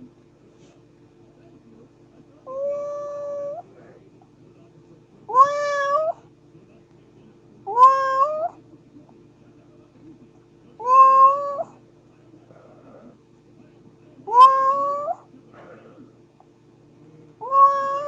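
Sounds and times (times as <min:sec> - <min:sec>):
kitten meowing: 0:05.3 - 0:06.2, 0:07.7 - 0:08.5, 0:10.8 - 0:11.7, 0:14.3 - 0:15.2, 0:17.4 - 0:18.0.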